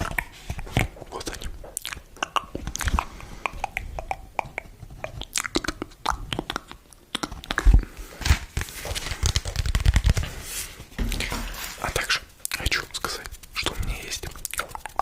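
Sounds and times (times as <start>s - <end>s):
chewing and crunching: 0.0s - 8.0s.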